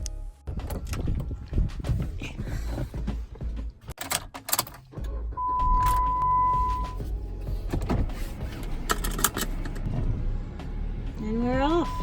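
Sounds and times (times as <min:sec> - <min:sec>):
car low rumble: 0:00.0 - 0:12.0
dashboard electronic chime: 0:05.4 - 0:07.0.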